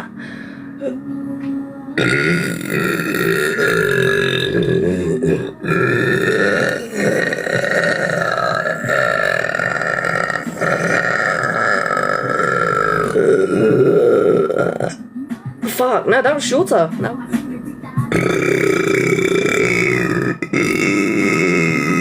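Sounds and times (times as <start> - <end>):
long burping: 2.0 - 15.0, 18.1 - 22.0.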